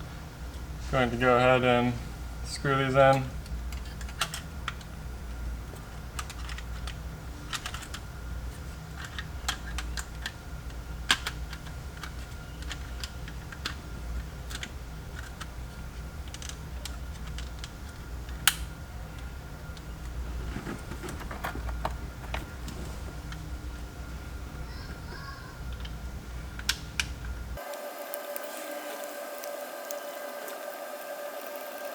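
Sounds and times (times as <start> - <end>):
low steady hum: 0.0 - 30.1.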